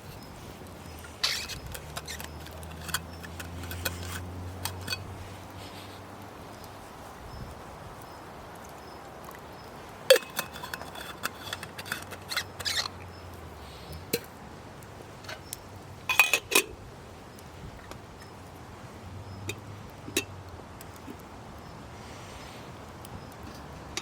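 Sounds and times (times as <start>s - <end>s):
cookware clinking and knocking: 10.1s - 12.1s, 16.1s - 16.7s.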